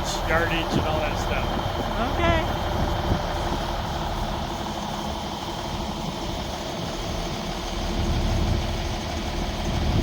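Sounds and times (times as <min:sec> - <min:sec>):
truck engine rumbling: 0:00.0 - 0:10.0.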